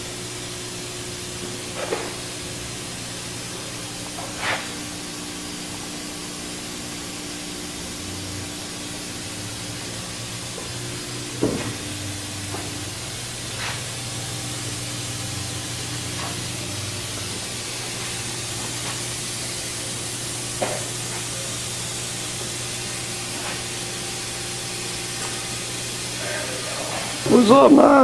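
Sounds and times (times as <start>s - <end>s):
low electrical hum: 0.0s - 28.0s
even hiss: 4.1s - 5.0s, 8.9s - 28.0s.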